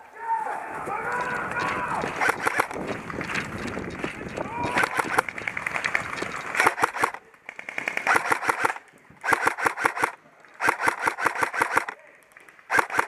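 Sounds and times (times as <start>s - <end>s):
airsoft gun firing bursts: 1.5s - 3.0s, 4.6s - 12.0s, 12.7s - 13.0s.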